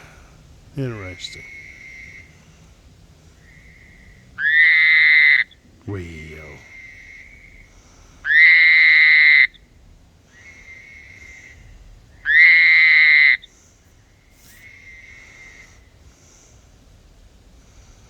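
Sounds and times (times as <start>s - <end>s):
loud high-pitched frog call: 1.4s - 2.3s, 3.4s - 5.6s, 6.6s - 9.7s, 10.3s - 13.5s.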